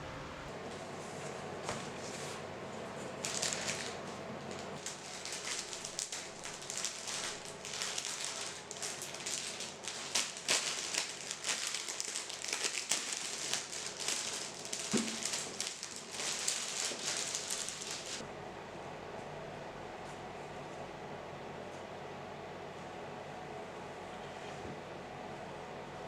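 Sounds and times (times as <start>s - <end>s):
crinkling and clicking of handling: 3.1s - 18.2s.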